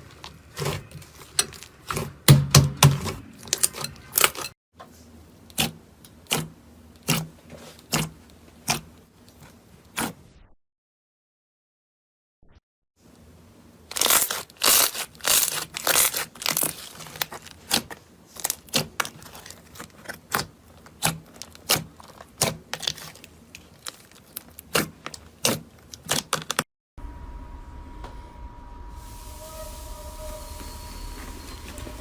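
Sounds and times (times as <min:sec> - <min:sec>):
slime crackling and popping: 0:13.9 - 0:26.6
low hum with faint tone: 0:27.0 - 0:32.0.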